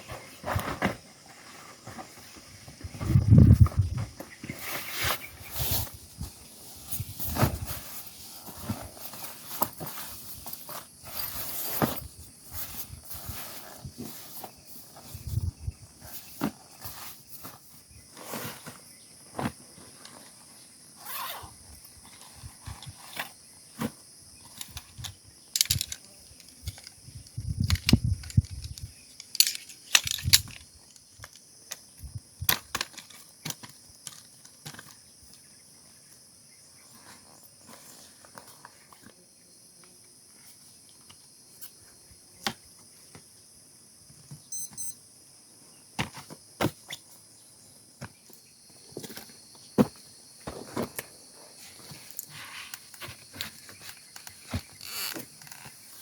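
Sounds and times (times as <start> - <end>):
high-pitched insect chorus: 0.0 - 38.3.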